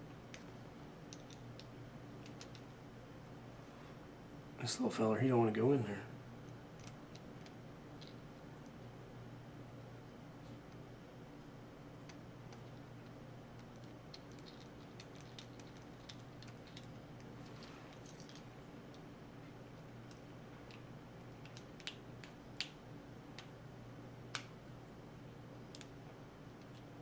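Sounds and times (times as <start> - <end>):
steady low hum: 0.0 - 27.0
small metal parts clicking: 13.8 - 18.5.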